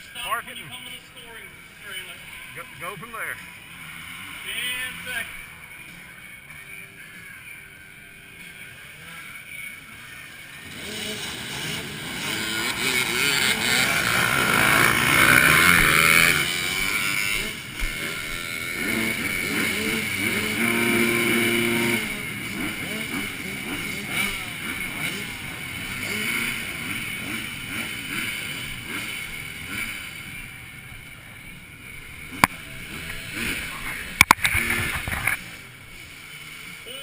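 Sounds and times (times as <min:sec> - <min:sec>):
dirt bike engines revving: 0:00.0 - 0:37.0.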